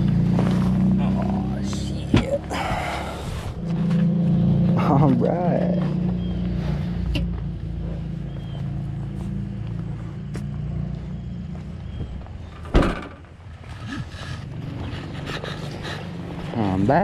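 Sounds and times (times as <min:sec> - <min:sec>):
car engine humming: 0:00.0 - 0:17.0
loud thud: 0:12.7 - 0:13.2.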